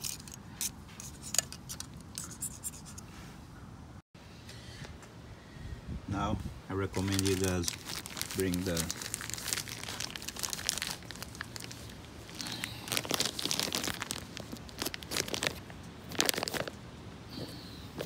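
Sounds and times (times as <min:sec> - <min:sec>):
hands handling engine parts: 0:00.0 - 0:03.1.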